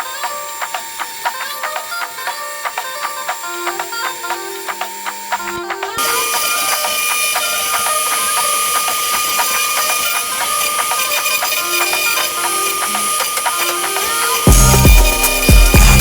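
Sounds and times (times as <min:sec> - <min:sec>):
cnc spindle whine: 0:00.0 - 0:16.0
hiss of cutting: 0:00.0 - 0:16.0.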